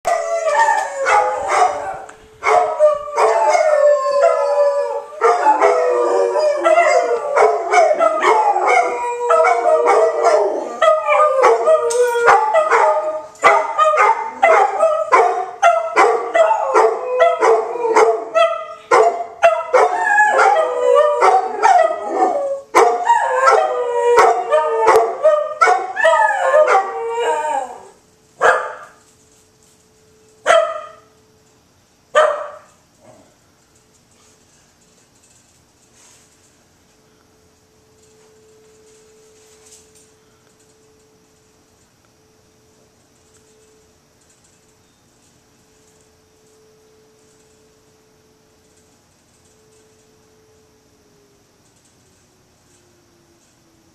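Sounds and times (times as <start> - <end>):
dogs barking and yipping: 0.1 - 27.8, 28.4 - 28.9, 32.2 - 32.7
dogs howling: 0.1 - 28.8
tornado siren wailing: 49.4 - 53.9.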